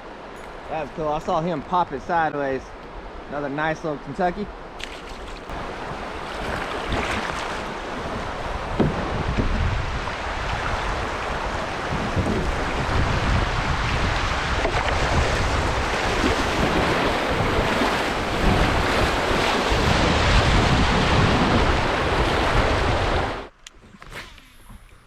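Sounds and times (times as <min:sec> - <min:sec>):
creek water rushing: 0:00.0 - 0:20.9
wind buffeting microphone: 0:05.2 - 0:23.5.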